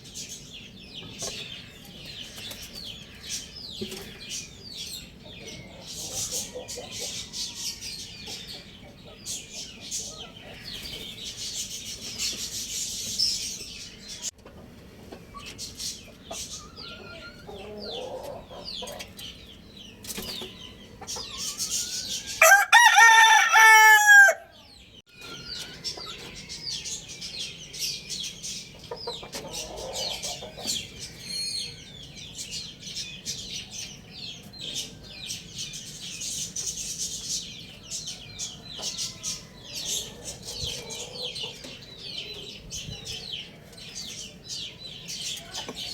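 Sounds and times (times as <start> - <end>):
fowl clucking: 16.4 - 19.2, 28.8 - 30.8
rooster crowing: 22.3 - 24.6.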